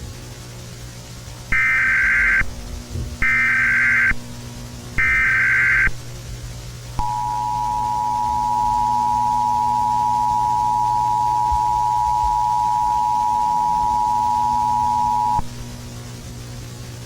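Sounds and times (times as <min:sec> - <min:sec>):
two-tone attention signal: 0:01.5 - 0:02.4, 0:03.2 - 0:04.2, 0:05.0 - 0:05.9, 0:07.0 - 0:15.5
digital data tone bursts: 0:01.5 - 0:02.5, 0:03.2 - 0:04.2, 0:05.0 - 0:06.0, 0:07.0 - 0:15.5.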